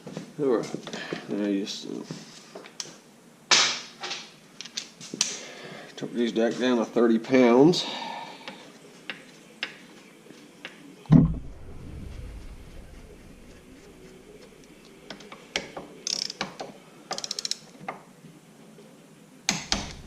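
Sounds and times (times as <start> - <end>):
ratchet wrench clicking: 17.1 - 17.6.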